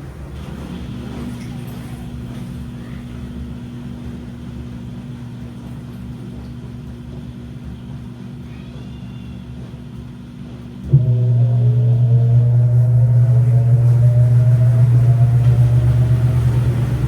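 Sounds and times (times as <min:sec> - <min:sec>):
washing machine humming: 0:00.0 - 0:17.0
motor whine rising in pitch: 0:10.9 - 0:17.0.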